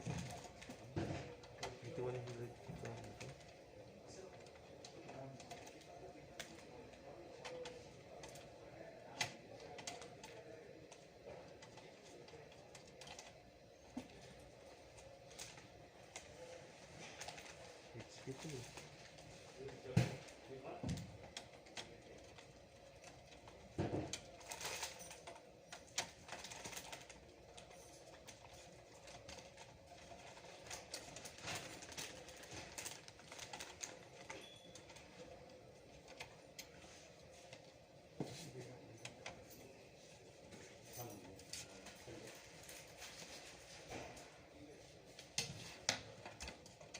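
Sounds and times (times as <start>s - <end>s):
computer parts clicking and tapping: 4.3s - 17.6s.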